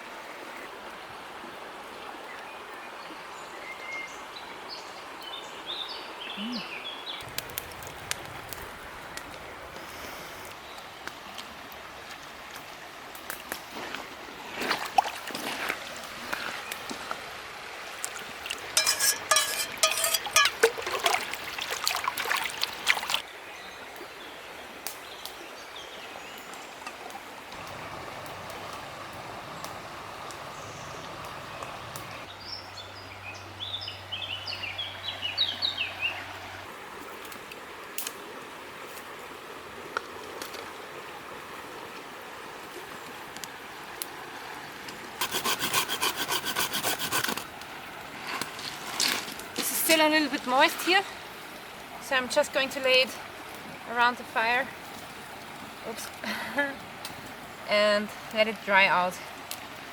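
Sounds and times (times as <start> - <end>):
loud clicking and crackling: 7.2 - 9.4
stream rushing: 13.9 - 23.4, 27.0 - 32.5, 34.6 - 59.9.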